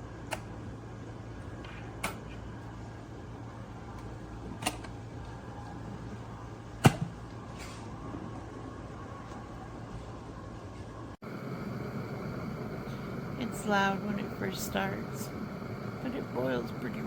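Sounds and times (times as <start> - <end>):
electric kettle humming and hissing: 11.2 - 17.0.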